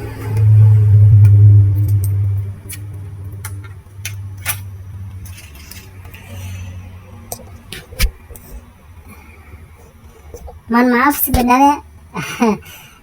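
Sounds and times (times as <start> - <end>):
low hum: 0.0 - 10.1.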